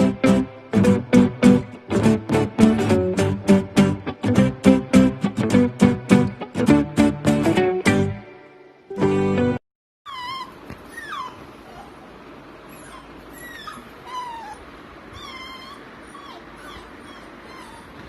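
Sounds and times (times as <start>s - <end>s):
puppy whimpering: 10.1s - 18.0s.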